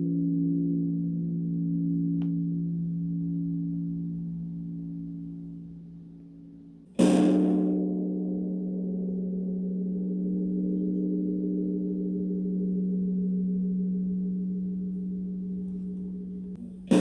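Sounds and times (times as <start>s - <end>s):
large temple bell struck: 7.0s - 17.0s.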